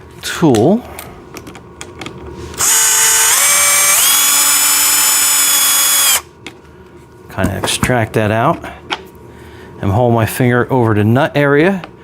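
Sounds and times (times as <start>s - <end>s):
power drill motor whining: 2.6s - 6.2s.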